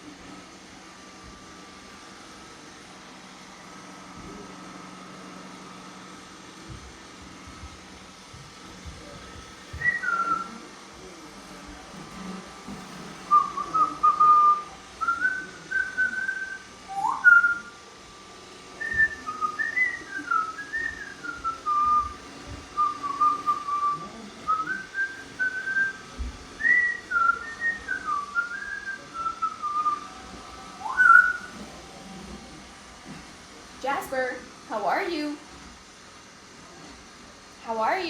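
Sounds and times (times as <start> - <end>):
parrot whistling a melody: 9.7 - 10.6, 13.3 - 17.7, 18.8 - 22.2, 22.8 - 26.0, 26.6 - 31.6.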